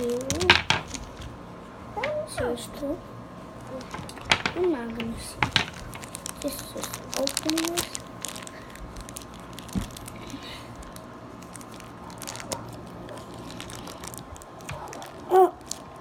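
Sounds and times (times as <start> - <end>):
plastic packaging crinkling and tearing: 0.0 - 1.4, 3.6 - 16.0.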